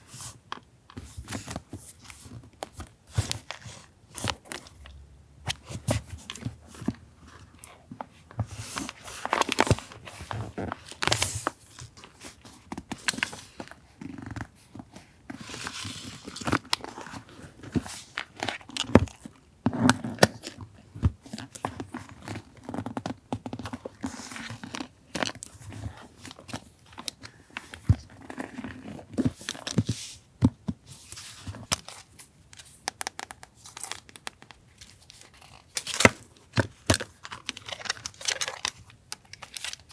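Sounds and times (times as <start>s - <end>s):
paper rustling and crinkling: 5.5s - 19.3s, 30.9s - 39.9s.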